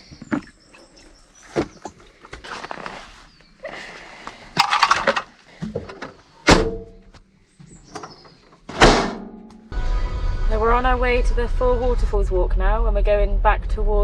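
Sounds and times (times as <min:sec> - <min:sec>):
rustling and clattering handling: 0:04.5 - 0:06.3.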